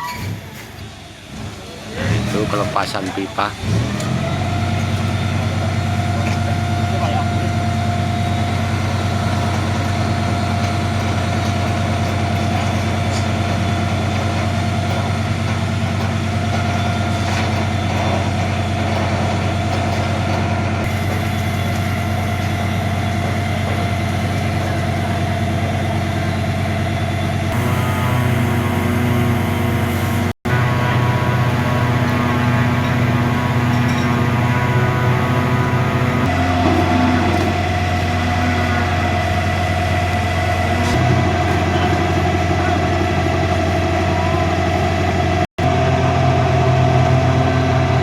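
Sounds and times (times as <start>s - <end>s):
diesel engine droning: 0.0s - 48.0s.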